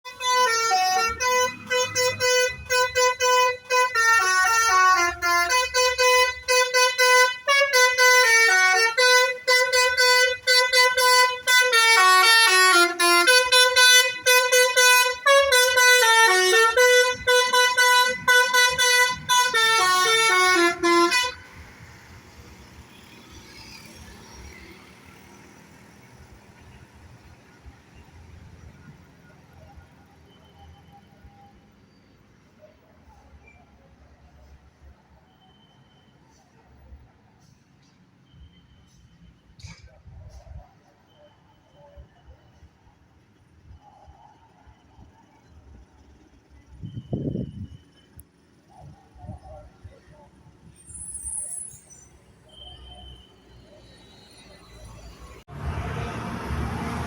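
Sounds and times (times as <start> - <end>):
musical vehicle horn honking: 0.1 - 21.6.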